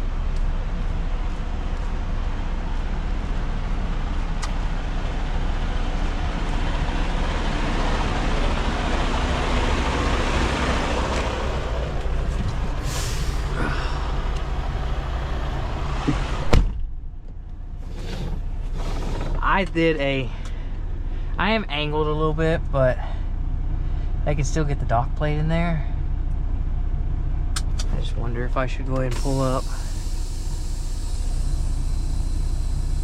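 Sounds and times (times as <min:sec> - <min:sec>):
truck diesel engine running: 0:00.0 - 0:33.0
air hissing: 0:12.8 - 0:14.5, 0:29.1 - 0:33.0.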